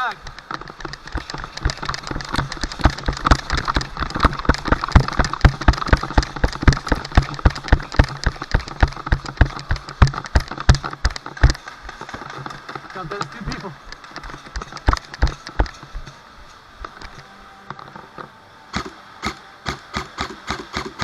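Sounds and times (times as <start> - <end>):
low hum: 0.0 - 21.0
rapid sharp knocks and clicks: 0.2 - 16.1.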